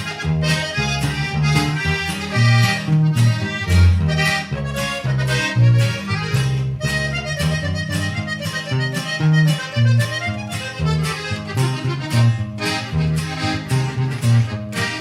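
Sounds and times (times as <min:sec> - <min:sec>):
accordion melody: 0:00.0 - 0:15.0
bass line: 0:00.0 - 0:15.0.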